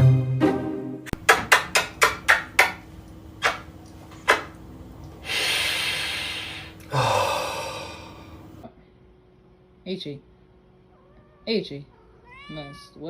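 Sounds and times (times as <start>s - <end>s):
sharp knocks: 1.2s - 2.8s
hiss: 5.2s - 6.8s.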